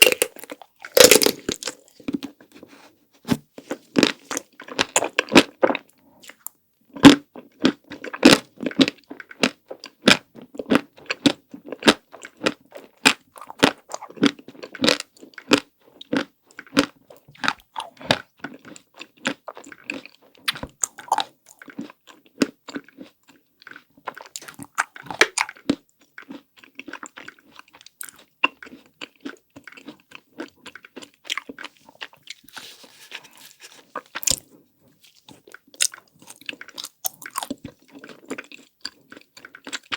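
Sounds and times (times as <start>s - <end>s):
crunching bites: 0.0s - 2.3s, 24.1s - 25.8s, 33.2s - 34.5s, 35.1s - 39.9s
wet chewing: 0.0s - 6.4s, 11.1s - 39.9s.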